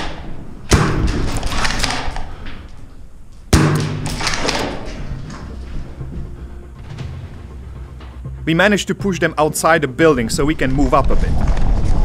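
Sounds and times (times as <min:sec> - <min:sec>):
airsoft rifle shots: 0:00.0 - 0:02.3, 0:03.5 - 0:05.0.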